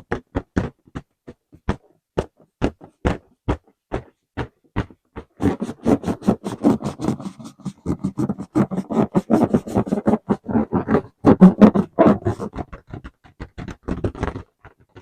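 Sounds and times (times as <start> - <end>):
rubber balloon squeaking: 4.8 - 15.0.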